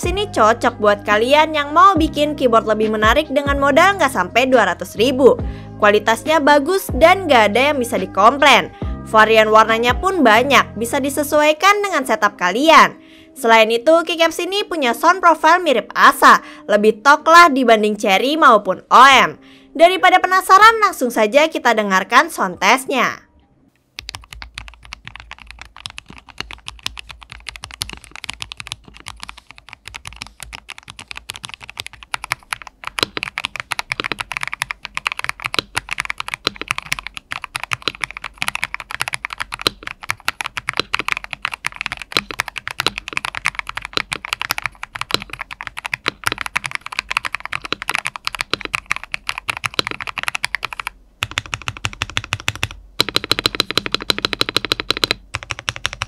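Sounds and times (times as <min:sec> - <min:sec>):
mechanical keyboard typing: 0:24.0 - 0:56.0.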